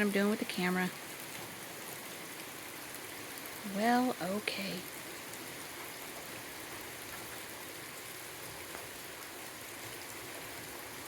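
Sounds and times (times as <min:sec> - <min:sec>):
heavy rain pattering: 0:00.0 - 0:11.0.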